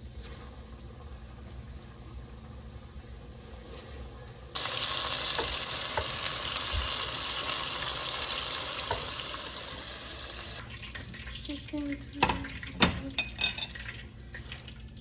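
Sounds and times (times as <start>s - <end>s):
food sizzling in hot oil: 4.5s - 12.4s.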